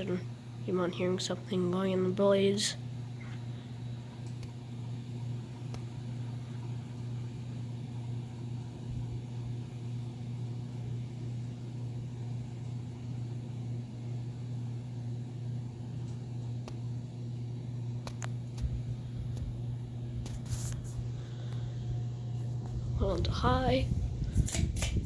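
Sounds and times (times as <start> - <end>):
ceiling fan humming: 0.0 - 25.0
fan blade vibration: 0.0 - 25.0.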